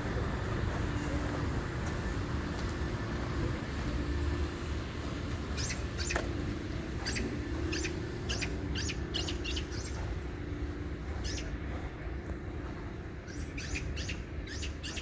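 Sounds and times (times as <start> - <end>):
low outdoor rumble: 0.0 - 15.0
small bird chirping: 5.6 - 6.2, 7.0 - 10.1, 11.1 - 11.6, 13.3 - 15.0.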